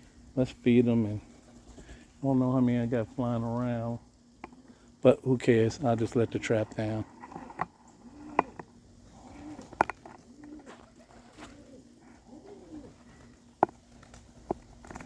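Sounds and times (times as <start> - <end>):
pigeons cooing: 4.4 - 15.0.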